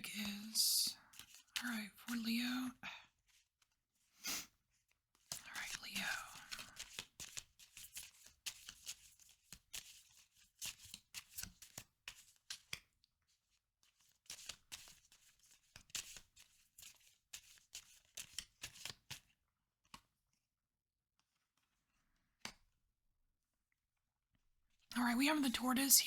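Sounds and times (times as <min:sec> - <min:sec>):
cards being shuffled: 0:01.1 - 0:01.8, 0:05.2 - 0:12.9, 0:13.9 - 0:20.0.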